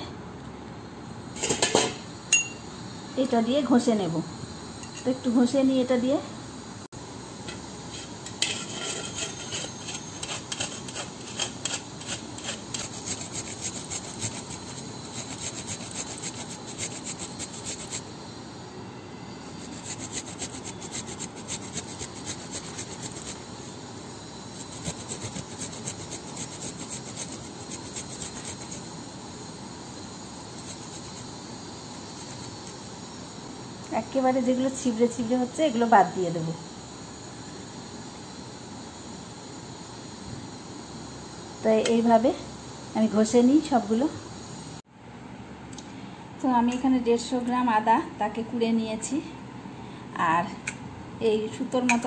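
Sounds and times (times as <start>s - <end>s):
ginger grated on a grater: 8.0s - 18.1s, 19.4s - 23.5s, 24.5s - 28.9s, 30.3s - 31.3s, 31.9s - 32.9s.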